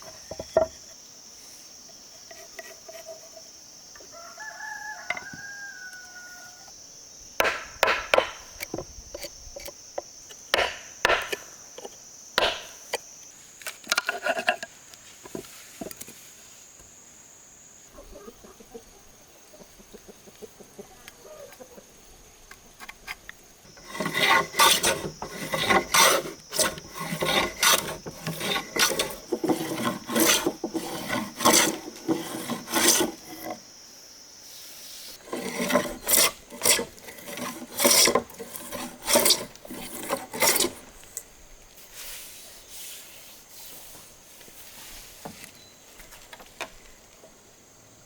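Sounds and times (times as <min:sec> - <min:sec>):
hand tool scraping wood: 0:02.2 - 0:03.5, 0:10.5 - 0:12.8, 0:13.9 - 0:14.7, 0:23.1 - 0:33.6, 0:35.2 - 0:46.2.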